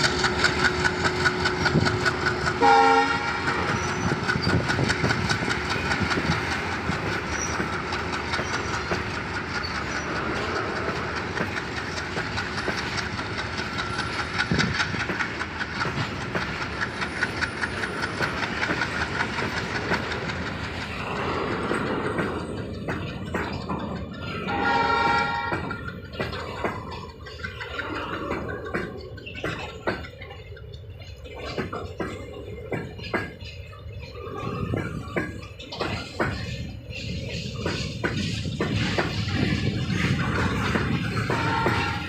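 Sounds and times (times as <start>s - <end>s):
train wheels clacking over rails: 0.0s - 42.0s
locomotive horn blast: 2.6s - 3.8s, 24.5s - 25.7s, 41.3s - 42.0s.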